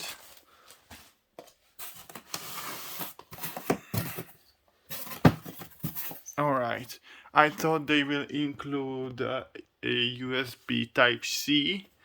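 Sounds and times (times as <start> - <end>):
packaging and paper rustling: 0.0 - 6.4.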